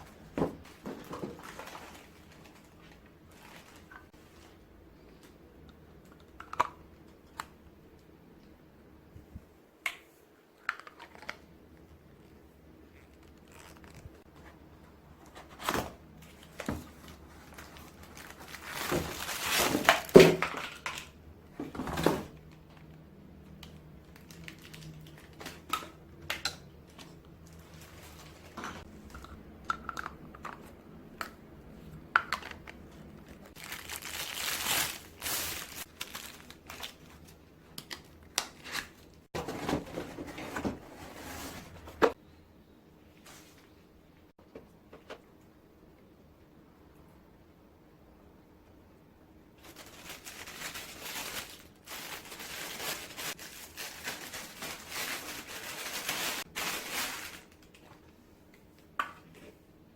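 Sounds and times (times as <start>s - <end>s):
crinkling and rustling: 0.0s - 5.4s, 10.6s - 30.8s, 32.3s - 42.2s, 49.6s - 59.6s.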